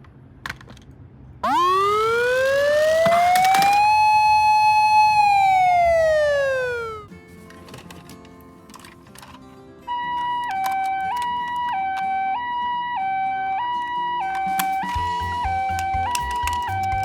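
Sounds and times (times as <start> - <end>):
toy electronic siren wailing: 1.4 - 7.1, 10.0 - 17.0.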